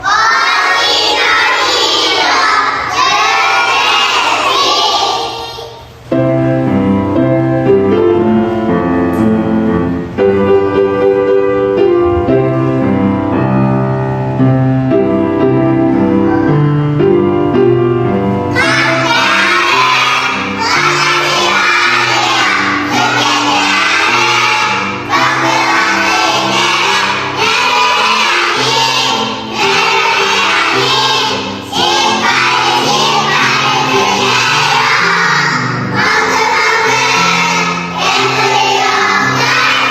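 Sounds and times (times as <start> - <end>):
young children singing: 0.0 - 6.0, 18.4 - 39.9
instrumental backing music: 5.8 - 39.9.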